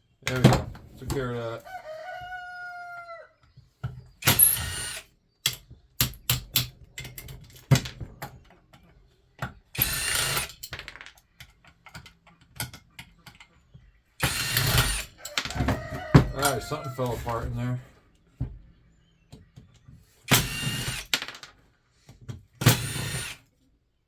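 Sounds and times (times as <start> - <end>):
metal parts clanking and rattling: 9.8 - 12.9.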